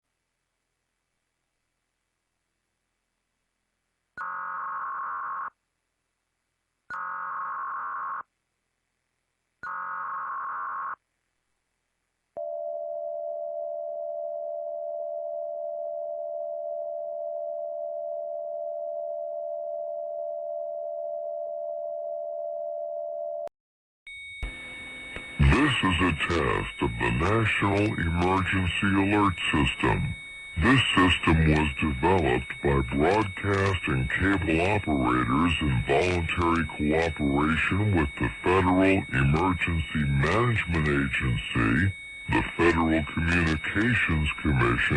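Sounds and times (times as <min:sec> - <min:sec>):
two-tone attention signal: 0:24.1 - 0:44.9
screeching data bursts: 0:24.4 - 0:44.9.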